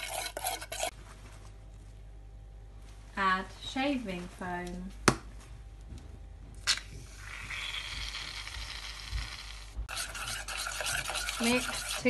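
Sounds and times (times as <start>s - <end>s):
rubbing stirring sound: 0.0s - 1.1s, 7.2s - 12.0s.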